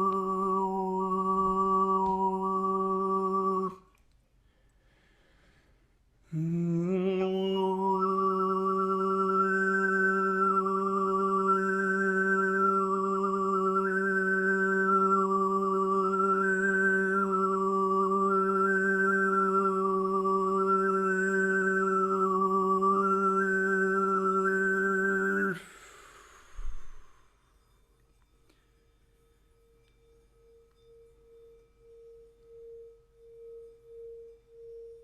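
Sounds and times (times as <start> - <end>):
throat singing: 0.0 - 3.8, 6.3 - 25.7.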